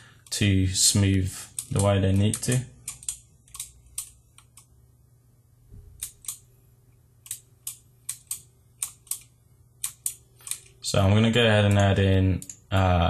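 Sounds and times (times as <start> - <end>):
faint low hum: 0.0 - 13.0
computer mouse and keyboard clicks: 1.5 - 4.7, 6.0 - 6.5, 7.2 - 10.8.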